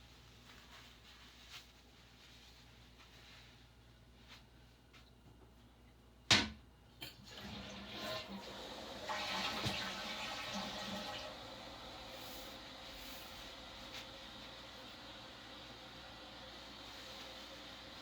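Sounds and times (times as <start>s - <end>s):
toilet water rushing: 7.1s - 18.0s.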